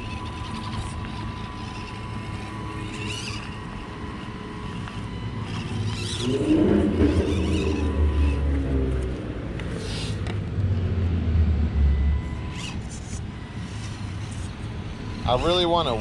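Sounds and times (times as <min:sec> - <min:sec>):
small electric motors whirring: 0:00.0 - 0:10.9, 0:11.7 - 0:16.0
low rumble: 0:06.2 - 0:09.6.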